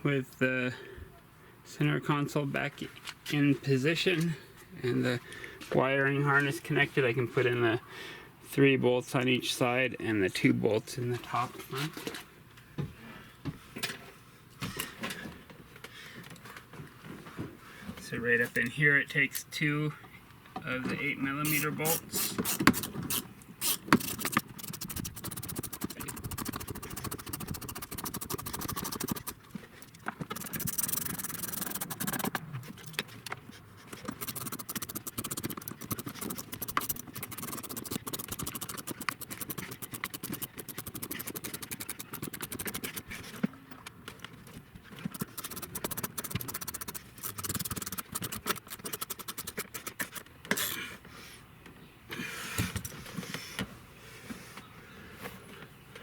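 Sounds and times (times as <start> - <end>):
hand ratchet clicking: 22.2 - 29.4, 30.3 - 32.4, 34.0 - 43.1, 45.1 - 50.8.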